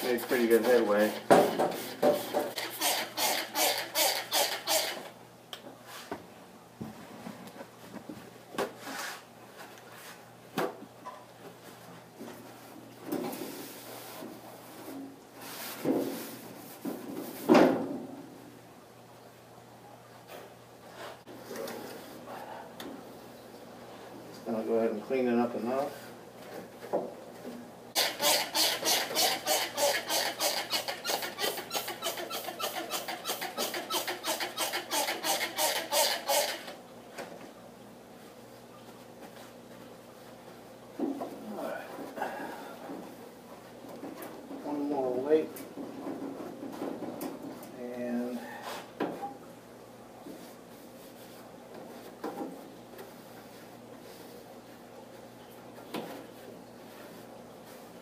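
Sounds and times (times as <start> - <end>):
cleaning tool scraping grill: 0.0 - 5.1, 28.0 - 36.8.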